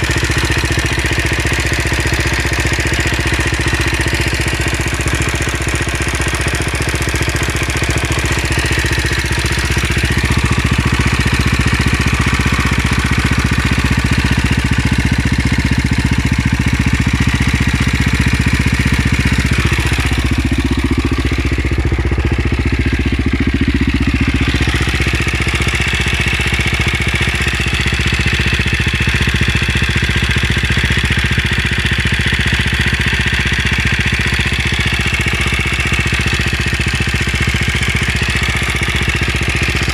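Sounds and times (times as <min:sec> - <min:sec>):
engine ticking: 0:00.0 - 0:39.9
motorcycle engine idling: 0:00.0 - 0:39.9.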